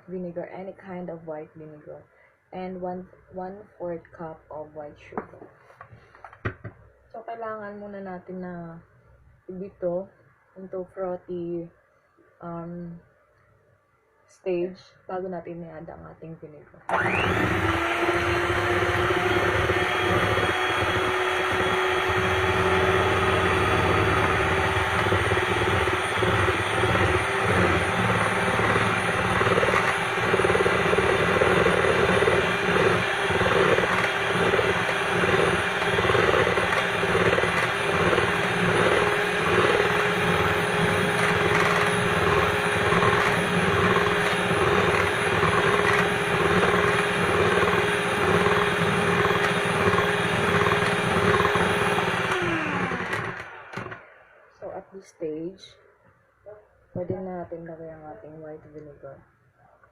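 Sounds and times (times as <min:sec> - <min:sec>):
electric hand mixer whipping: 0:16.9 - 0:54.4.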